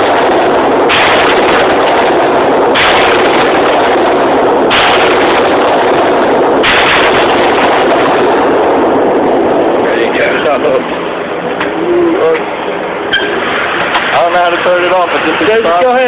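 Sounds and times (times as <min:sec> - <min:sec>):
rifle shots with echo: 0:00.0 - 0:09.8.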